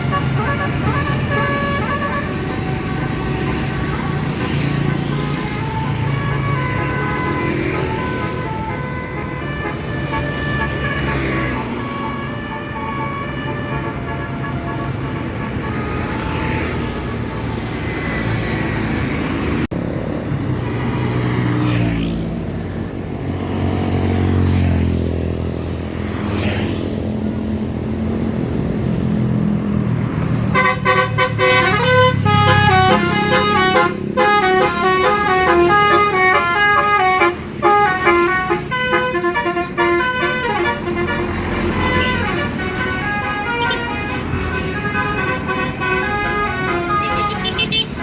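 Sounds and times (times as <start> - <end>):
bus engine running: 0.0 - 16.2, 30.5 - 48.0
multi-tone bus horn melody: 0.0 - 18.5, 30.3 - 48.0.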